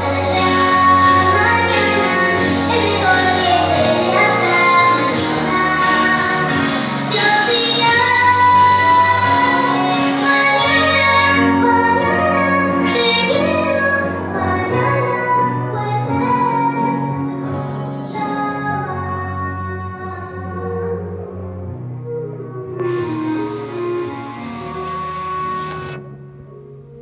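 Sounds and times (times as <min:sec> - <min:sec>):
woman singing: 0:00.0 - 0:21.4
held bass notes: 0:21.5 - 0:26.9.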